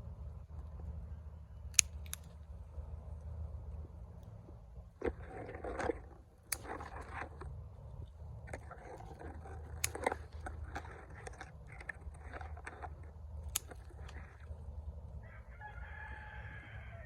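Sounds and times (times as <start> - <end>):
scissors snipping stems: 1.7 - 2.4, 6.4 - 7.4, 13.4 - 14.3
rooster crowing: 15.2 - 17.0.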